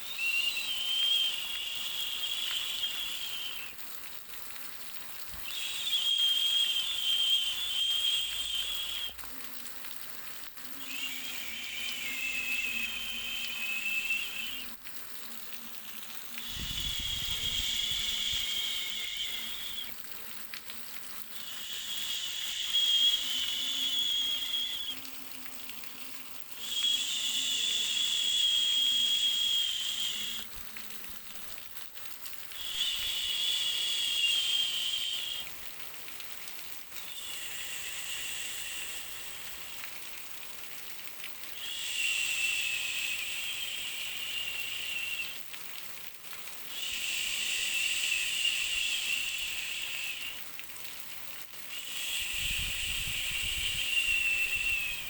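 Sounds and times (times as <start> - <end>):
high whistling hiss: 0.0 - 31.7, 32.5 - 45.9, 46.5 - 51.0, 51.6 - 55.0.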